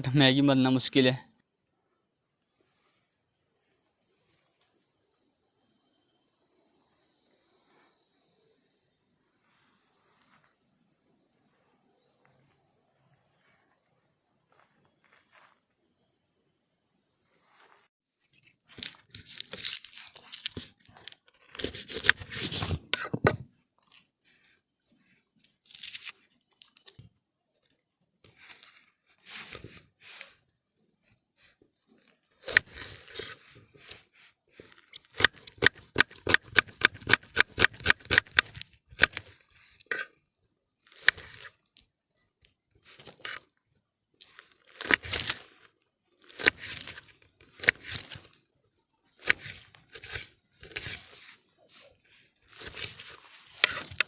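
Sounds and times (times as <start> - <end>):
onion skin tearing and crunching: 18.4 - 20.9, 25.6 - 26.2, 44.2 - 45.5, 46.2 - 48.3, 49.2 - 51.2, 52.4 - 54.0.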